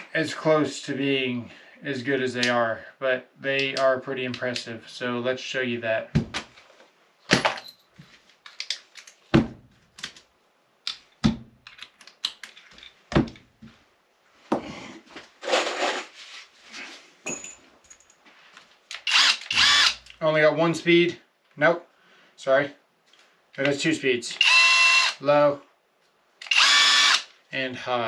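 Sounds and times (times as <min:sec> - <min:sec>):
rustling and scraping: 0:06.3 - 0:10.3, 0:11.0 - 0:18.9.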